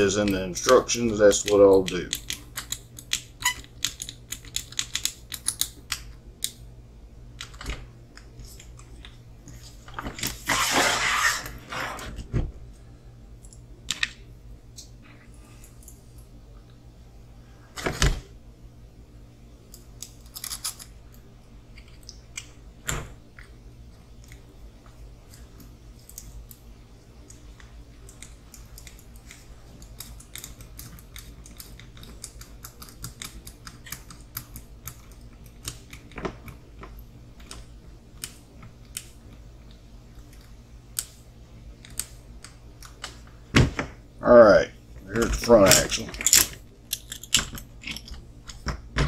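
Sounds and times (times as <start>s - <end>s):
steady low hum: 0.0s - 49.0s
small parts clicking: 0.2s - 6.6s, 45.6s - 48.6s.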